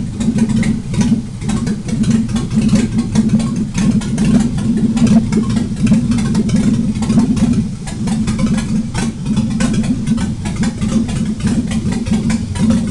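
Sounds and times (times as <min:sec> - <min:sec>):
engine idling without exhaust: 0:00.0 - 0:12.9.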